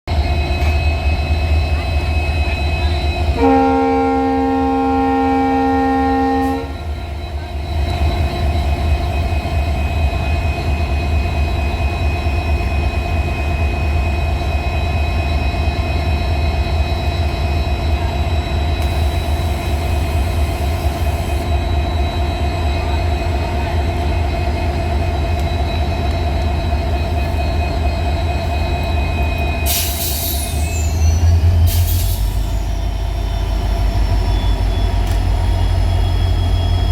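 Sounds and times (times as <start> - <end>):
locomotive engine humming: 0.1 - 36.9
locomotive horn blast: 3.3 - 6.8
high squeal: 24.3 - 36.9.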